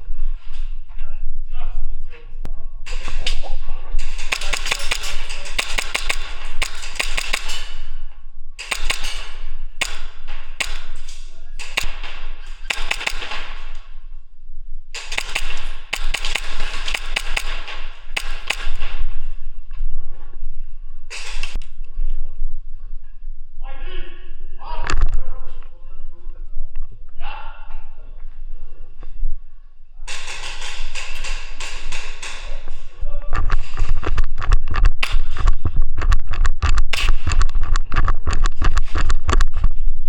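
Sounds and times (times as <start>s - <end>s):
airsoft guns firing full auto: 4.0s - 14.0s, 14.9s - 19.3s, 30.1s - 32.8s.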